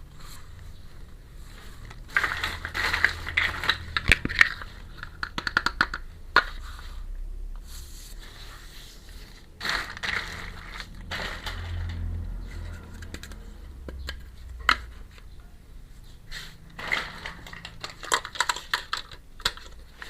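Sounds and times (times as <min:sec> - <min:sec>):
plastic packaging crinkling: 0:01.5 - 0:05.7, 0:09.2 - 0:13.4, 0:16.7 - 0:20.0.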